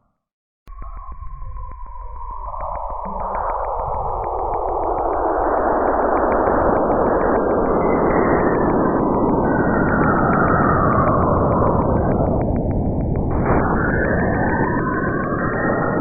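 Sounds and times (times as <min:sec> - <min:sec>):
faint regular ticks: 0:02.5 - 0:08.0
dense whooshing noise: 0:02.7 - 0:16.0.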